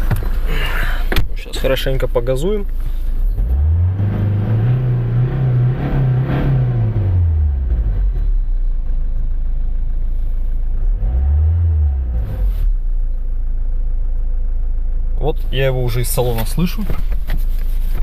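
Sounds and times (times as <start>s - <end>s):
diesel engine revving: 0.0s - 13.1s.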